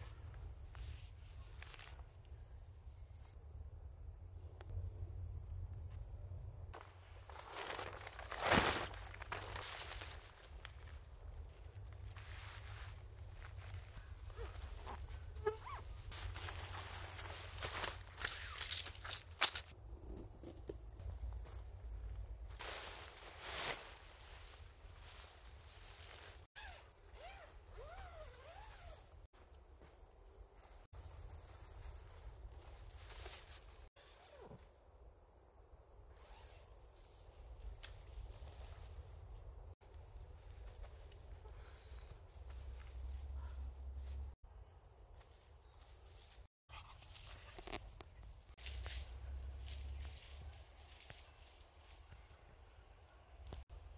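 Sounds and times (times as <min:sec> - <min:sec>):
high-pitched insect trill: 0:00.0 - 0:53.9
rustling: 0:06.8 - 0:19.7, 0:22.4 - 0:29.1, 0:30.6 - 0:34.6.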